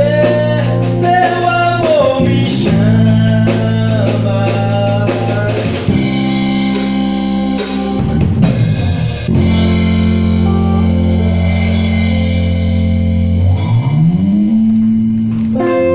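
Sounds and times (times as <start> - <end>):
bass and guitar notes: 0.0 - 15.9
drum kit: 0.0 - 15.9.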